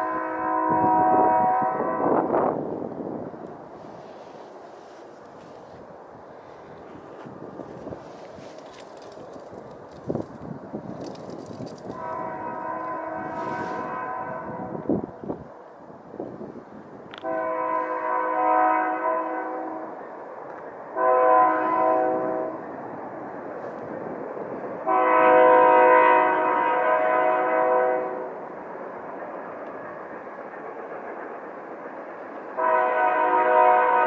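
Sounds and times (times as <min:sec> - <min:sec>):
locomotive air horn: 0:00.0 - 0:02.3, 0:11.9 - 0:14.8, 0:17.2 - 0:20.0, 0:21.0 - 0:22.6, 0:24.9 - 0:28.4, 0:32.6 - 0:34.0
steady background noise: 0:02.3 - 0:14.2.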